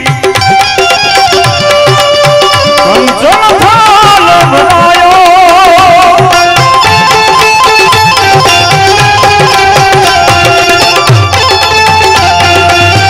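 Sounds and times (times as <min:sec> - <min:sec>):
hand drum rhythm: 0:00.0 - 0:13.0
melody instrument playing: 0:06.8 - 0:13.0.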